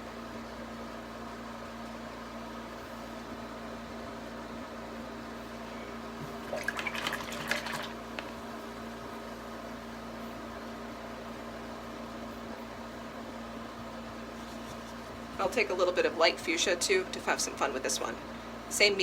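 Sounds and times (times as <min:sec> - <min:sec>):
steady electrical hum: 0:00.0 - 0:19.0
paintbrush splashing in water jar: 0:06.4 - 0:08.4.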